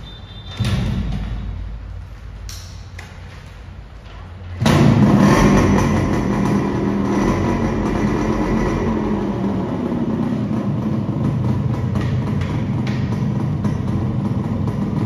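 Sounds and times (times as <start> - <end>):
two-stroke motorcycle engine: 4.6 - 15.0.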